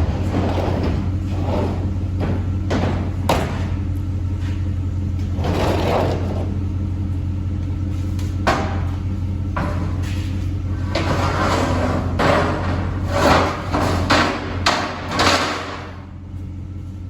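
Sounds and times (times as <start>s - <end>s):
sharp knocks and clanks: 0.0s - 3.9s, 8.4s - 16.1s
low mechanical hum: 0.0s - 17.0s.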